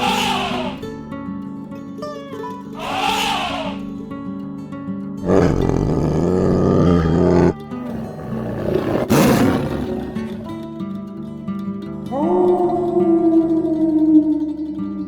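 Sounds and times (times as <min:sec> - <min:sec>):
music with plucked tones: 0:00.9 - 0:02.8, 0:10.5 - 0:15.0
large animal roaring: 0:05.2 - 0:10.6.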